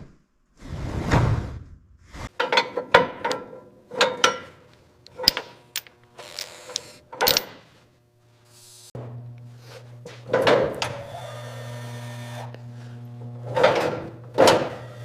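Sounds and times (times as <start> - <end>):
metal clinks and knocks: 2.4 - 7.7.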